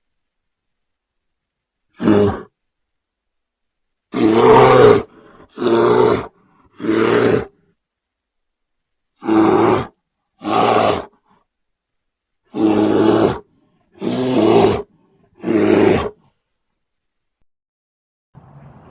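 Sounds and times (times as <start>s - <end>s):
wild animal calling deep and rough: 1.9s - 2.5s, 4.1s - 7.6s, 9.2s - 11.2s, 12.5s - 16.3s.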